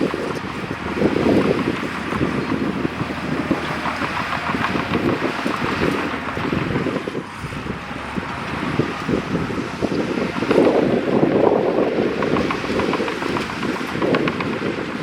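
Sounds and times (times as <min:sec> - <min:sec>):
heavy diesel machinery running: 0:00.0 - 0:15.0
wind buffeting microphone: 0:00.0 - 0:15.0.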